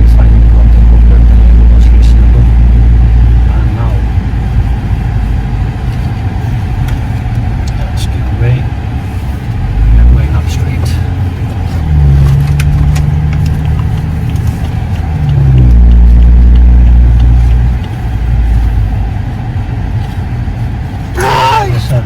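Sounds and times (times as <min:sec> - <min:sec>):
car engine accelerating: 0:00.0 - 0:22.0
road noise: 0:00.0 - 0:22.0.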